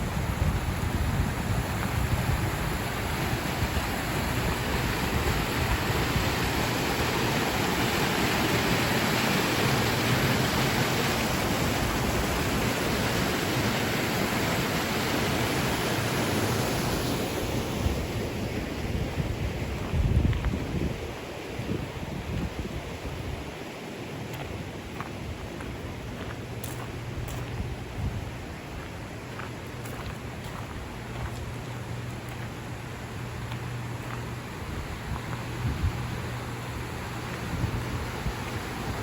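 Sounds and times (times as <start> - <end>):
wind buffeting microphone: 0.0 - 7.1, 17.8 - 23.6
water rushing: 0.0 - 19.8, 23.5 - 39.0.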